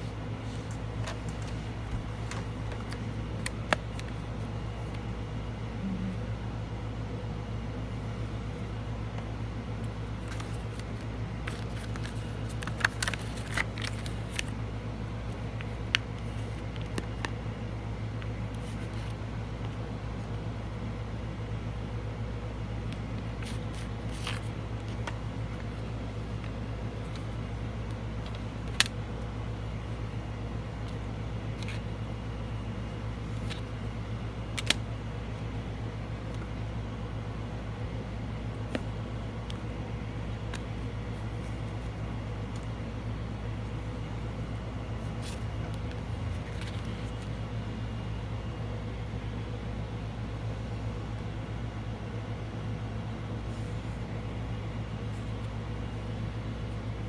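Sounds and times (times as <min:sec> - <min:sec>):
air conditioner humming: 0:00.0 - 0:57.0.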